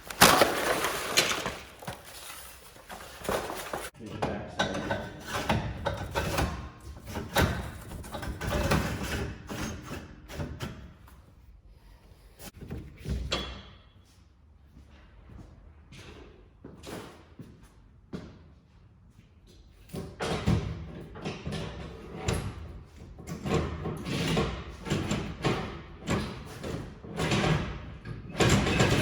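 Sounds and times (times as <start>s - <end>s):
parts and tools clanking: 0.0s - 10.9s.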